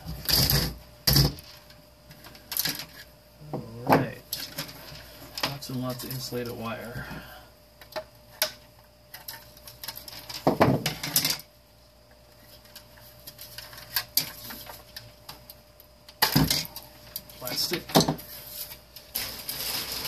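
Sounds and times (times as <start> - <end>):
parts clattering: 7.9 - 11.5.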